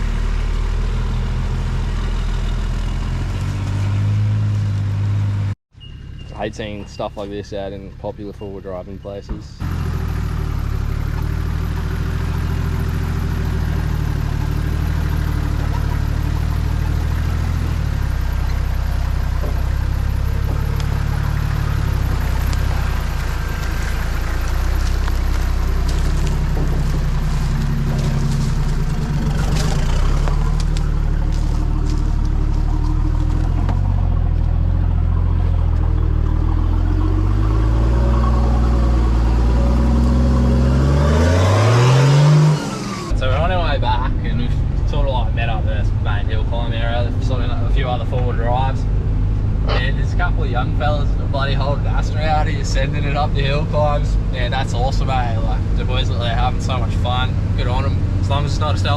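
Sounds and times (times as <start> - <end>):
diesel engine running: 0.0 - 58.9
vehicle rattling and knocking: 6.0 - 40.8.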